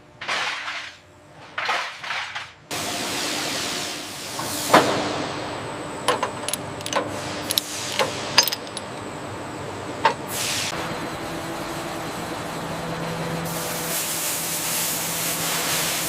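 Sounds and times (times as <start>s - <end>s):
steady background hum: 0.0s - 16.0s
metallic clicks and clanks: 6.1s - 9.0s.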